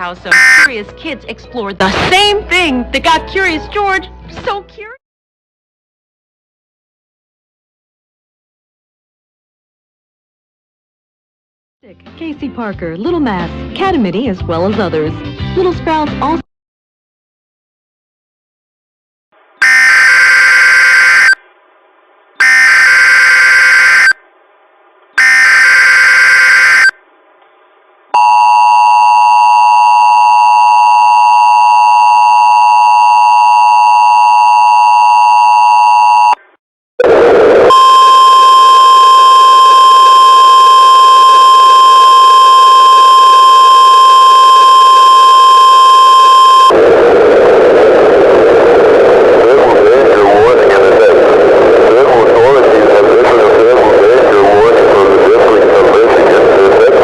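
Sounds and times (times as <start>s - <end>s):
screeching data tones: 0.3s - 0.7s, 19.6s - 21.4s, 22.4s - 24.2s, 25.2s - 27.0s
two-tone attention signal: 0.3s - 0.7s, 19.6s - 21.4s, 22.4s - 24.2s, 25.2s - 26.9s, 37.7s - 46.7s
harsh steady tone: 0.3s - 0.8s, 19.4s - 21.5s, 22.4s - 24.2s, 25.2s - 27.0s, 28.2s - 57.0s.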